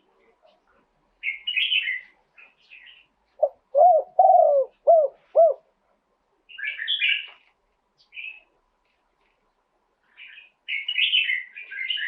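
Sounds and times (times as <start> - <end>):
dove cooing: 3.4 - 5.7.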